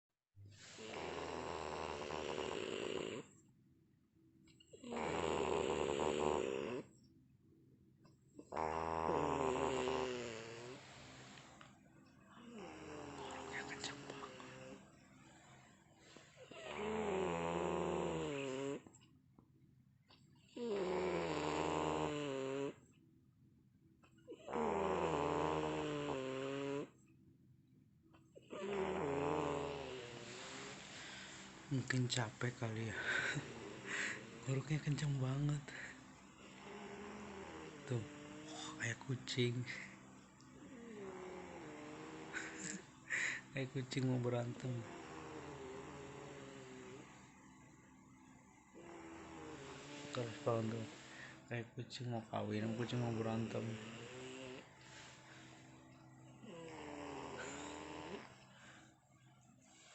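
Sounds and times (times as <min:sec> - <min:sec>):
woman snoring loudly: 0:00.6 - 0:03.3, 0:04.8 - 0:06.9, 0:08.4 - 0:11.4, 0:12.4 - 0:14.8, 0:16.0 - 0:18.9, 0:20.6 - 0:22.8, 0:24.3 - 0:26.9, 0:28.5 - 0:31.5, 0:32.9 - 0:35.0, 0:35.7 - 0:38.9, 0:40.6 - 0:43.4, 0:44.6 - 0:47.2, 0:48.7 - 0:51.4, 0:52.7 - 0:55.6, 0:56.4 - 0:58.7.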